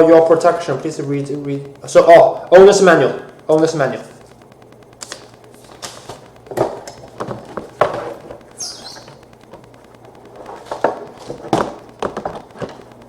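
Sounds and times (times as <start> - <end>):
paper rustle: 5.0 - 8.4.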